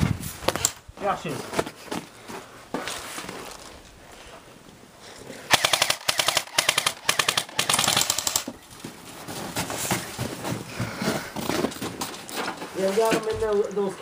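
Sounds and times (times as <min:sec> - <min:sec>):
airsoft gun full-auto bursts: 0:05.5 - 0:08.5.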